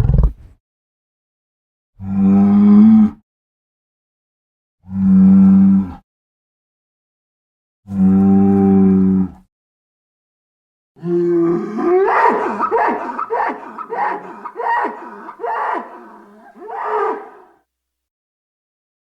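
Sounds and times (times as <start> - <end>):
low creature bellow: 11.0 - 17.6.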